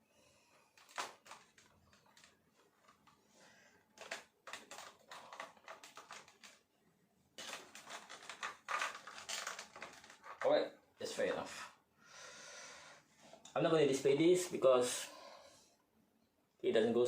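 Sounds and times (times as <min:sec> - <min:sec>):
plastic parts clicking: 0:00.7 - 0:03.2, 0:03.8 - 0:06.7, 0:07.4 - 0:10.6.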